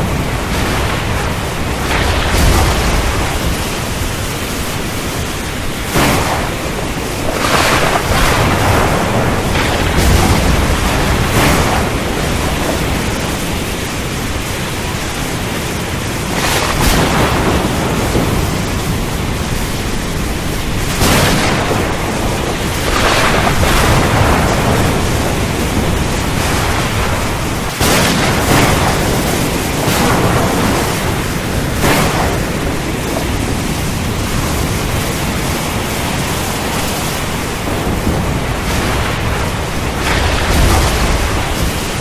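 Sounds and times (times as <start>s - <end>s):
rain: 0.0s - 42.0s
thunder rumbling: 0.0s - 42.0s
wind: 0.0s - 42.0s.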